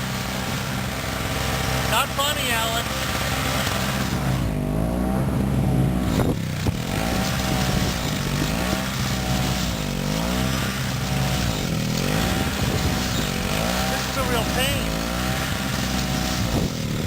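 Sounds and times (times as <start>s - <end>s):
snowblower engine bogging: 0.0s - 17.0s.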